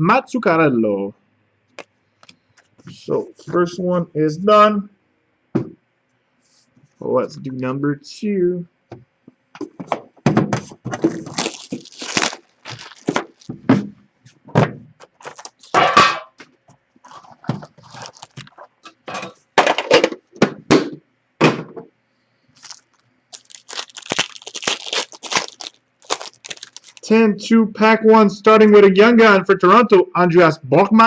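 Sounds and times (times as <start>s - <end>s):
wrappers crinkling and tearing: 11.0s - 13.6s, 15.0s - 15.8s, 17.0s - 18.8s, 22.6s - 27.1s.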